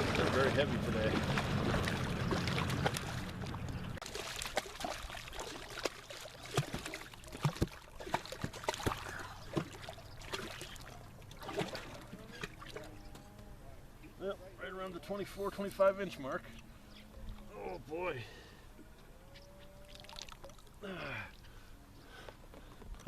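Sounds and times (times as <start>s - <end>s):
low hum: 0.0s - 4.0s
water splashing and dripping: 0.0s - 12.9s, 19.9s - 20.8s.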